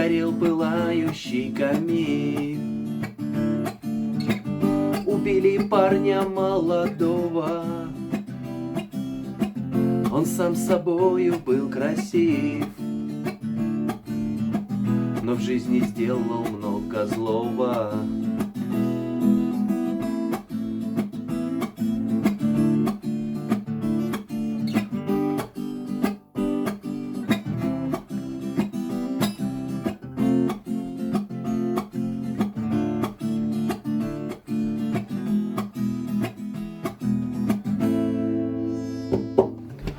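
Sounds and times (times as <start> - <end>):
strummed acoustic guitar: 0.0 - 39.9.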